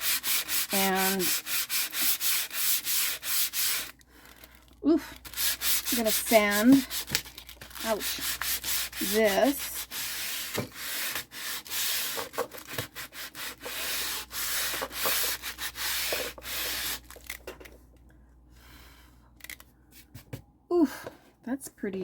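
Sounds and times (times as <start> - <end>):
sandpaper rubbing on book cover: 0.0 - 4.0, 5.2 - 17.2.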